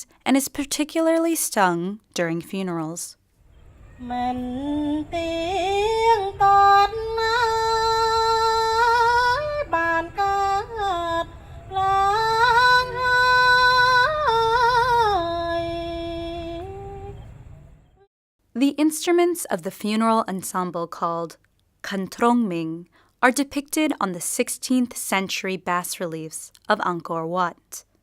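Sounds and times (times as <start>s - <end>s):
woman singing a chant: 3.9s - 17.4s.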